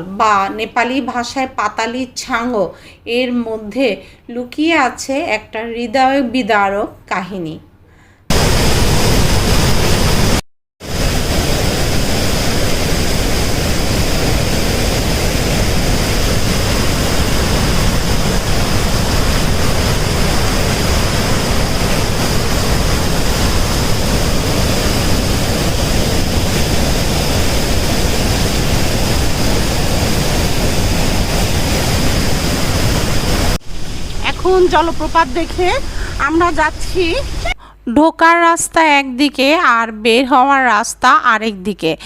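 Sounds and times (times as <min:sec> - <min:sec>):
waterfall rushing: 0:08.3 - 0:37.6.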